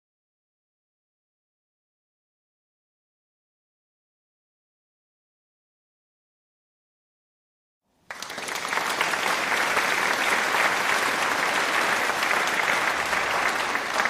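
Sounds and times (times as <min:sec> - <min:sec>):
hands clapping: 0:08.0 - 0:14.0.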